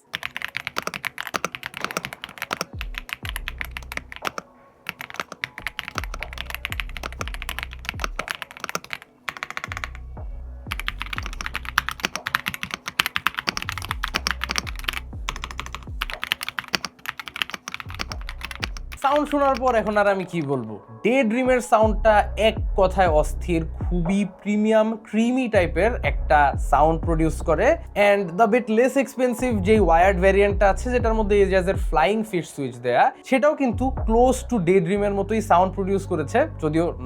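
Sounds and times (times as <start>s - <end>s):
fast typing on mechanical keyboard: 0.0s - 10.0s, 10.7s - 20.0s.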